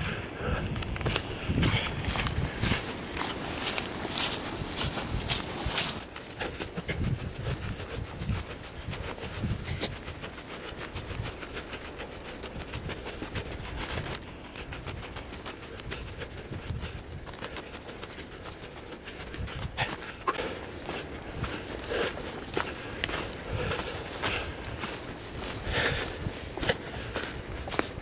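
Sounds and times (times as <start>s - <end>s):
footsteps on forest trail: 0.0s - 28.0s
rustling and crunching underfoot: 0.0s - 28.0s.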